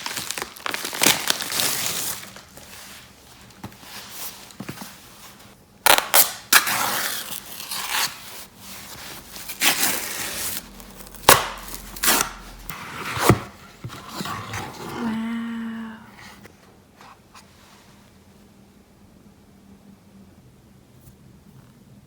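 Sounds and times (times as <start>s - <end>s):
packaging rustling and tearing: 0.0s - 4.9s, 5.9s - 14.4s.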